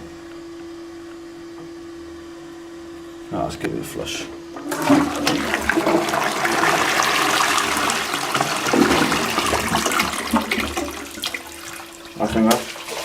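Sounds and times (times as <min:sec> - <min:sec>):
toilet flushing: 0:04.6 - 0:13.0.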